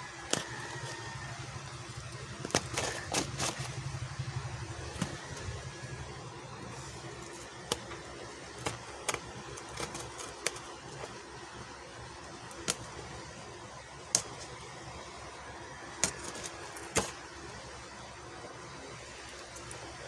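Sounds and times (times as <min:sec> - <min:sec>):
packaging clicking and crinkling: 0:00.1 - 0:03.9, 0:07.2 - 0:11.2, 0:15.9 - 0:17.2.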